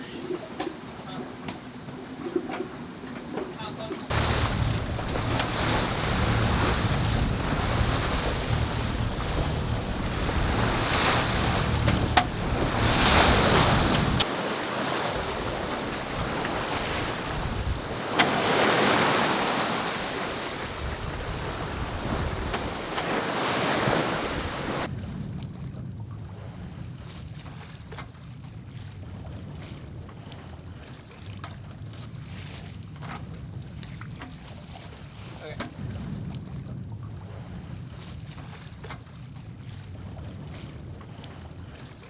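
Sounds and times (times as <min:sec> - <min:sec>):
waves rushing along hull: 0:03.6 - 0:25.0
wind buffeting microphone: 0:04.1 - 0:14.3, 0:14.9 - 0:27.4, 0:31.8 - 0:42.0.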